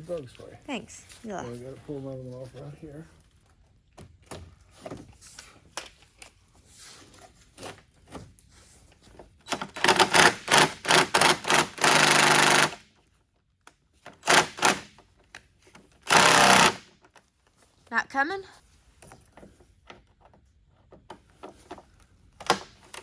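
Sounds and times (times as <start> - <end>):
power driver bursts: 16.1 - 16.8.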